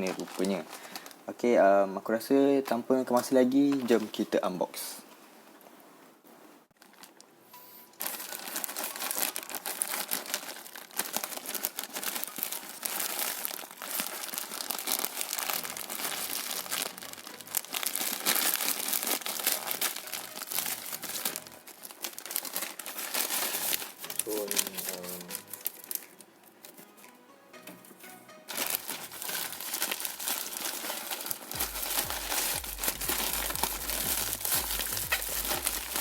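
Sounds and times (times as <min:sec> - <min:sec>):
packaging crinkling and tearing: 0:00.0 - 0:01.2, 0:06.8 - 0:07.3, 0:08.0 - 0:26.8, 0:28.5 - 0:36.0.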